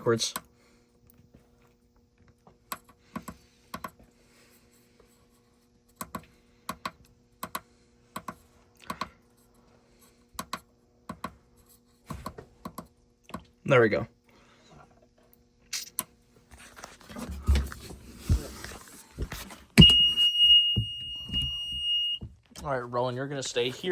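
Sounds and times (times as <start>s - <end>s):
faint steady hum: 0.0s - 23.9s.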